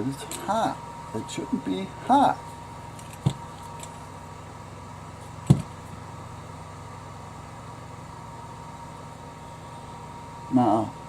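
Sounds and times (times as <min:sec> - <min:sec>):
electrical hum: 0:00.0 - 0:11.0
sharp clunk: 0:05.4 - 0:05.8.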